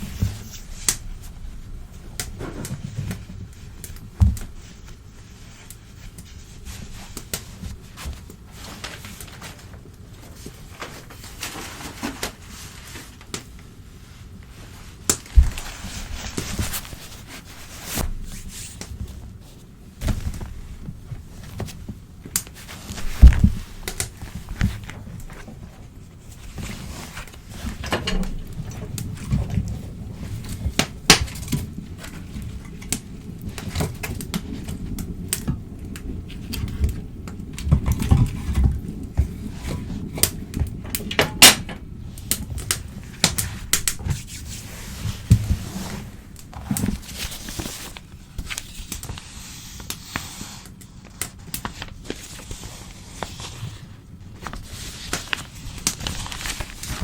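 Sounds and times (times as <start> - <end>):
newspaper crinkling and tearing: 42.2 - 57.0.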